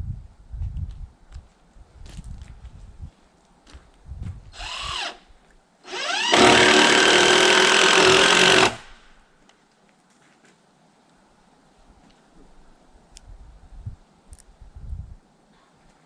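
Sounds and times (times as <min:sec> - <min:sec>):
power drill running: 0:04.6 - 0:05.2, 0:05.9 - 0:09.0.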